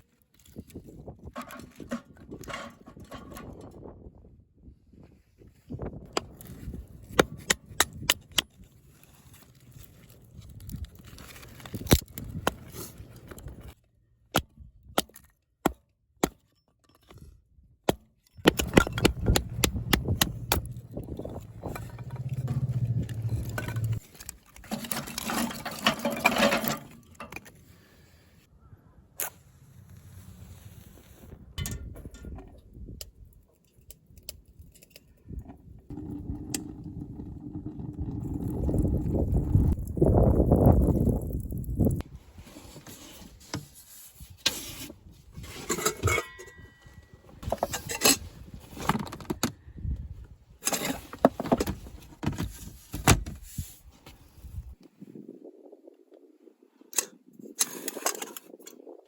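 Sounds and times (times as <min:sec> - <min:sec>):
sharp clicks and knocks: 0:18.4 - 0:24.0
low rushing wind: 0:18.4 - 0:24.3, 0:35.3 - 0:42.3.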